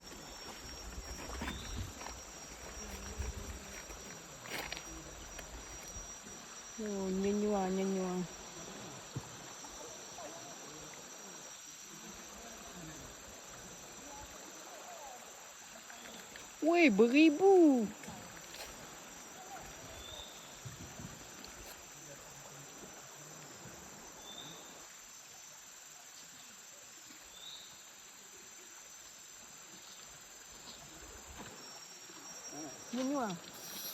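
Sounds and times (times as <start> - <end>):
high-pitched insect drone: 0.0 - 15.7, 30.6 - 33.9.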